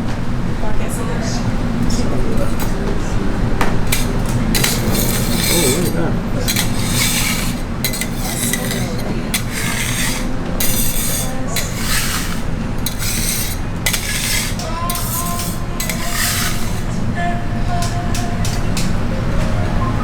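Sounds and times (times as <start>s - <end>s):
metal spatula scraping griddle: 3.9s - 17.0s.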